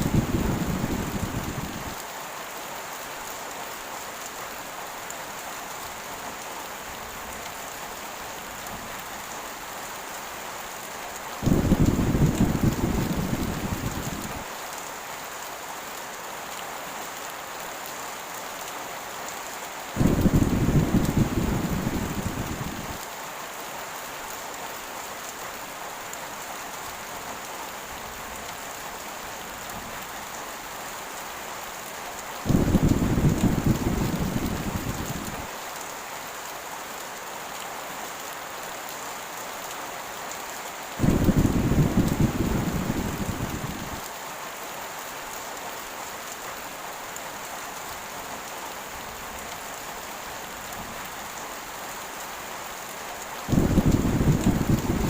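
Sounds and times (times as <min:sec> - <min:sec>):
thunder rumbling: 0:00.0 - 0:02.0, 0:11.4 - 0:14.4, 0:20.0 - 0:23.0, 0:32.5 - 0:35.4, 0:41.0 - 0:44.0, 0:53.5 - 0:55.0
heavy rain falling: 0:00.0 - 0:55.0.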